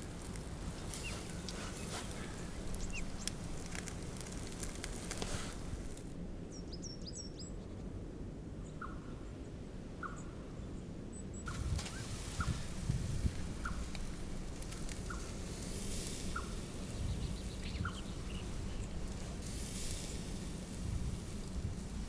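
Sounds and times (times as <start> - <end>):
campfire crackling: 0.0 - 6.2, 11.5 - 22.0
small bird chirping: 0.0 - 7.4, 11.4 - 21.9.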